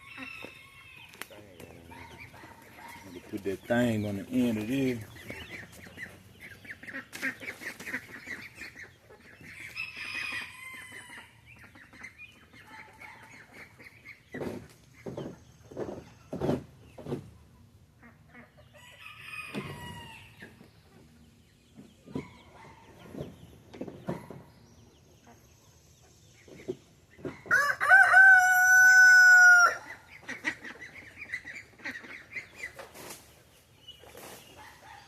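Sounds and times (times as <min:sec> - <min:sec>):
rooster crowing: 0:00.0 - 0:01.2, 0:09.8 - 0:11.3, 0:19.0 - 0:20.3, 0:27.5 - 0:29.9
chickens clucking: 0:00.0 - 0:35.0.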